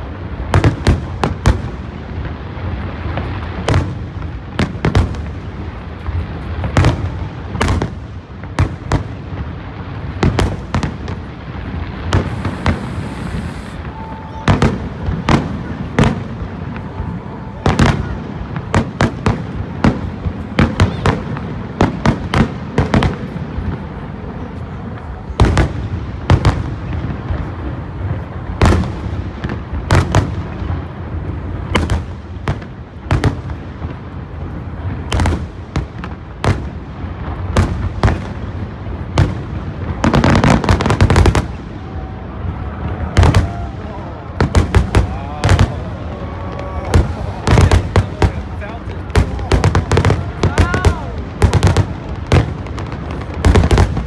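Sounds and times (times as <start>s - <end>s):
rumble of launches: 10.8s - 17.4s
firework shells bursting: 11.8s - 15.0s.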